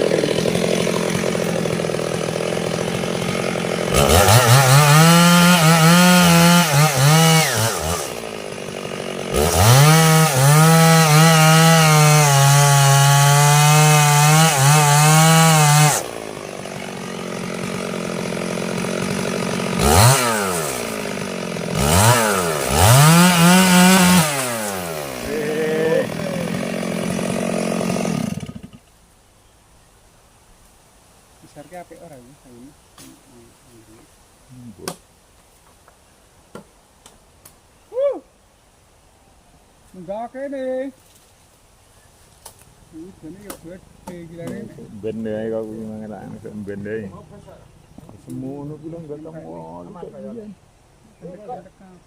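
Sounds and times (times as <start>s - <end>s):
chainsaw cutting wood: 0.0s - 28.9s, 43.3s - 44.7s.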